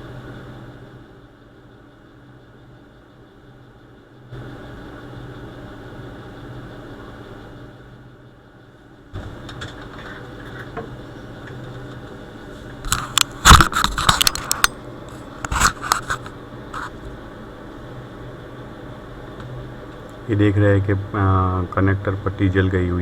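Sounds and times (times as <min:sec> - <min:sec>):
plastic casing clicks and scrapes: 0:12.9 - 0:14.7.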